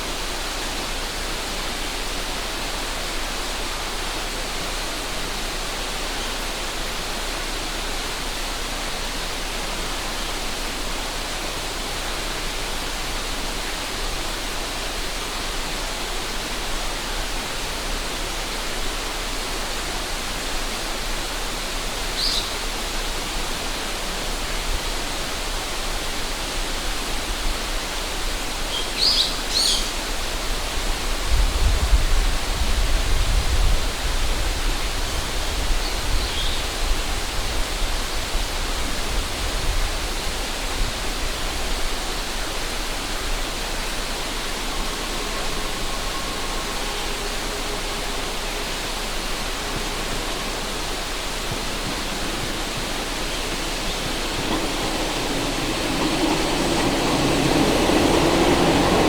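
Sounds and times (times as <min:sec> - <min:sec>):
river water rushing: 0:00.0 - 0:59.0
bird chirps: 0:28.7 - 0:29.9
wind rumble on microphone: 0:29.9 - 0:43.6.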